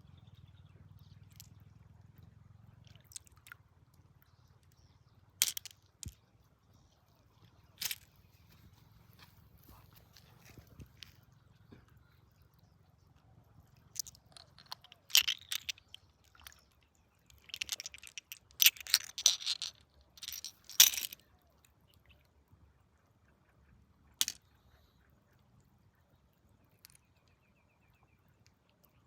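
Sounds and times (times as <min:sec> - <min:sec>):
gravel crunching and clicking: 0:01.1 - 0:21.3.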